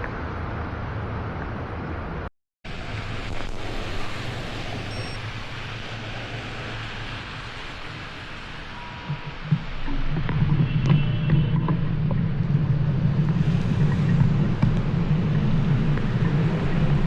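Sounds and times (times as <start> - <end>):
low traffic rumble: 0.0 - 17.0
wind noise on microphone: 2.7 - 17.0.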